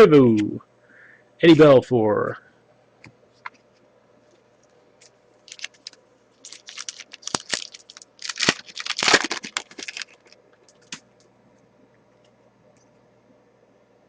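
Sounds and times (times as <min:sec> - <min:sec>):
wrapper tearing and crinkling: 0:05.4 - 0:11.0.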